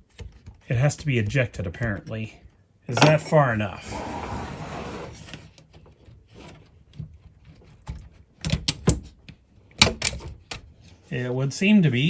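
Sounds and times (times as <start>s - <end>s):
plastic panel scraping: 2.9s - 5.5s.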